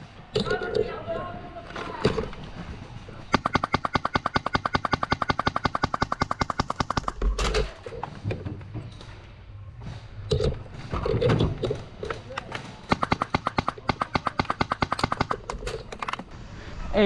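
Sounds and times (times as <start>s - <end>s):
airsoft rifle full-auto burst: 3.3s - 7.4s, 12.9s - 16.2s.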